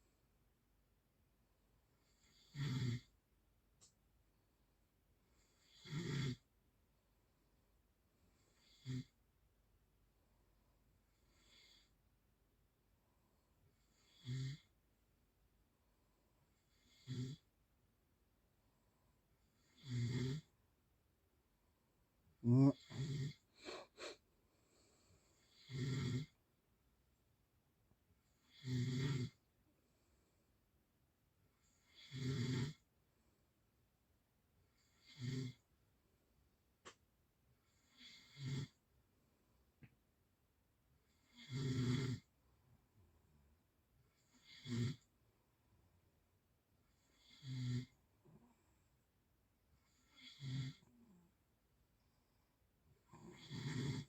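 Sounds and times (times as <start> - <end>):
person snoring: 2.0 - 3.1, 5.4 - 6.4, 8.4 - 9.2, 13.8 - 14.7, 16.7 - 17.5, 19.6 - 20.5, 22.4 - 24.2, 25.4 - 26.4, 28.4 - 29.4, 31.8 - 32.8, 34.8 - 35.6, 37.8 - 38.8, 41.2 - 42.3, 44.2 - 45.1, 47.0 - 48.4, 49.8 - 51.2, 53.1 - 54.0.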